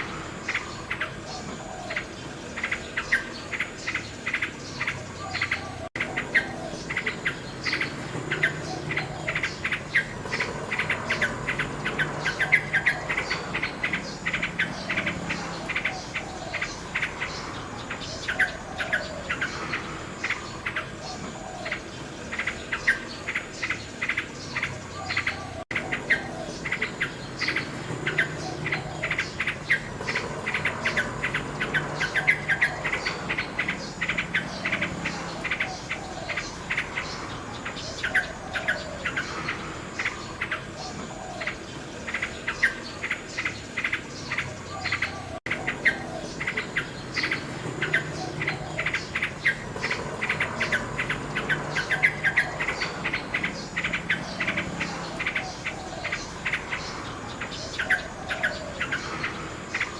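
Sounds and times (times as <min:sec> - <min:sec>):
insects chirping: 0:00.0 - 0:59.9
nightingale singing: 0:00.0 - 0:59.9.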